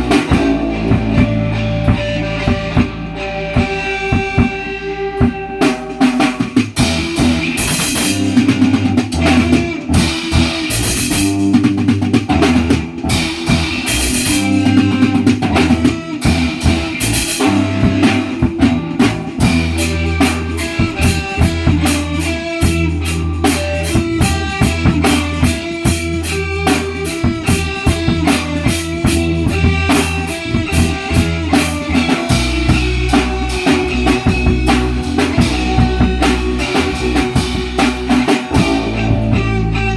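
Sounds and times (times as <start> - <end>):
low bass line: 0.0 - 5.6, 27.4 - 39.9
band playing instrumental: 0.0 - 39.9
drum kit beat: 0.0 - 39.9
guitar: 0.0 - 39.9.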